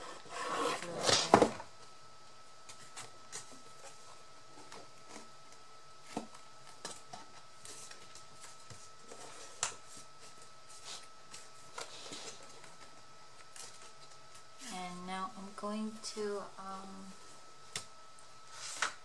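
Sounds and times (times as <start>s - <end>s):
paper and cardboard rustling: 6.0s - 14.9s.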